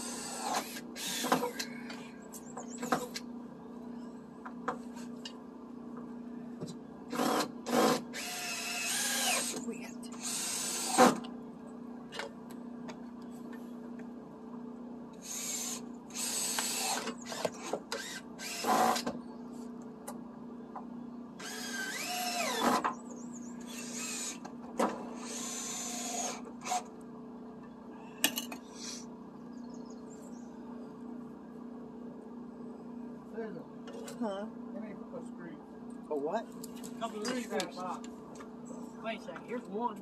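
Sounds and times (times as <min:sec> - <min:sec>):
power drill driving screws: 0:00.0 - 0:01.6, 0:07.1 - 0:09.6, 0:10.2 - 0:11.3, 0:15.2 - 0:19.2, 0:21.4 - 0:22.9, 0:23.6 - 0:24.5, 0:25.1 - 0:26.9
steady low hum: 0:00.0 - 0:40.0.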